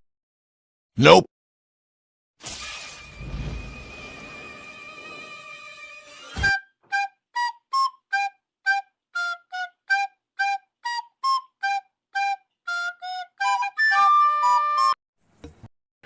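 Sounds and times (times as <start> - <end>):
flute-like melody: 3.9 - 15.0.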